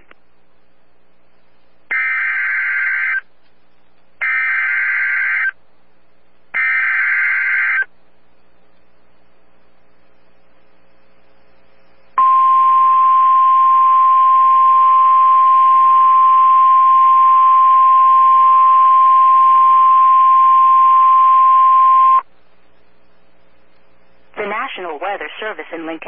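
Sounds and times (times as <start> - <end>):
radio static hiss: 0.0 - 0.3, 1.1 - 5.7, 6.5 - 12.2, 19.0 - 26.0
steady warning alarm tone: 1.9 - 3.2, 4.2 - 5.5, 6.6 - 7.9, 12.2 - 22.2.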